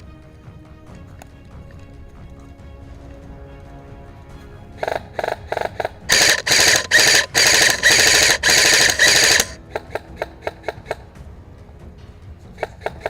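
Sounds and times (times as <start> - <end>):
airsoft rifle firing: 6.1 - 9.6.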